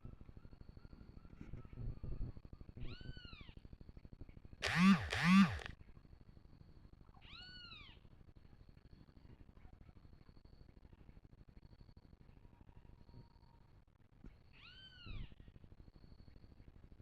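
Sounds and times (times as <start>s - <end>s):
animal calls rising and falling: 4.6s - 5.7s.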